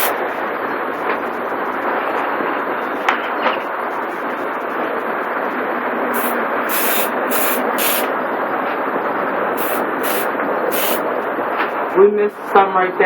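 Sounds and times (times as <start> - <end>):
garden hose spraying water: 6.2 - 8.1, 9.6 - 11.0.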